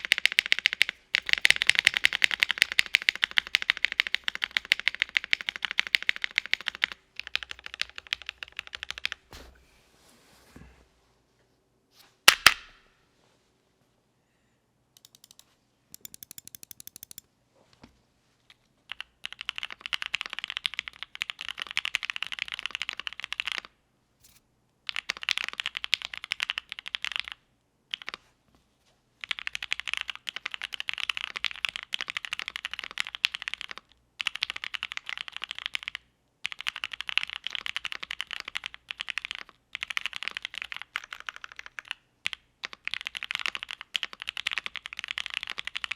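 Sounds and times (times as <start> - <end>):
fast typing on mechanical keyboard: 0.0 - 9.3, 15.0 - 17.2, 18.9 - 28.2, 29.2 - 45.9
sharp click: 15.0 - 17.3.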